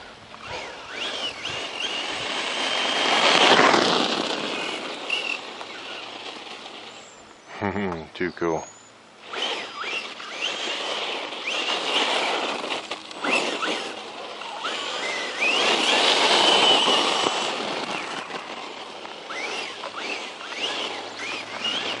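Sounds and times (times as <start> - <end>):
rc truck motor whining: 0.0 - 7.4, 9.2 - 22.0
tyres and drivetrain noise: 0.0 - 8.0, 8.8 - 22.0.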